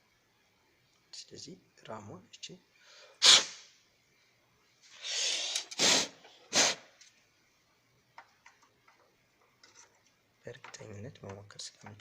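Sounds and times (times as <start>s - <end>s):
hissing blow of breath: 4.9s - 6.9s
breath puffs blown by mouth: 5.0s - 6.9s.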